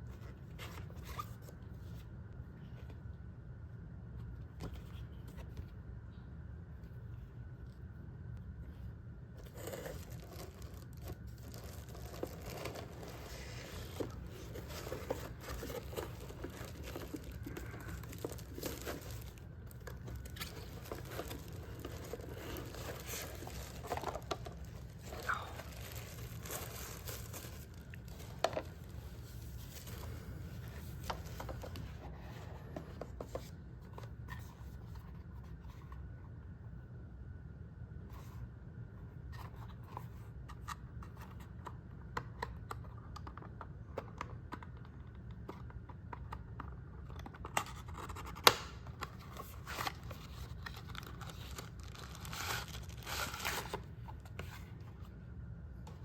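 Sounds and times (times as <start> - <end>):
steady low hum: 0.0 - 56.0
packaging crinkling and tearing: 9.5 - 31.8, 47.5 - 54.6.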